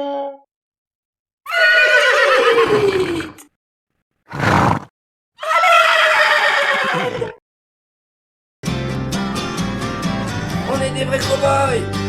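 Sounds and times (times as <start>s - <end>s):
horse whinnying: 1.5s - 3.5s, 4.3s - 7.4s.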